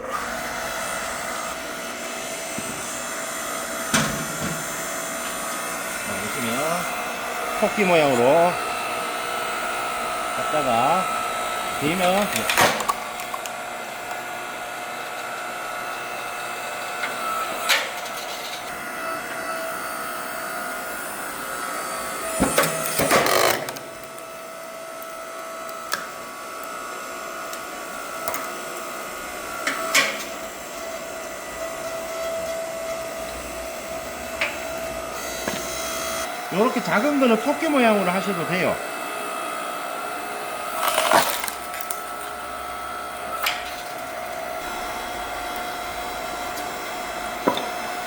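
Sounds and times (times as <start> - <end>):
log splitter motor whining: 0.0 - 48.0
wood cracking and snapping: 40.8 - 42.1.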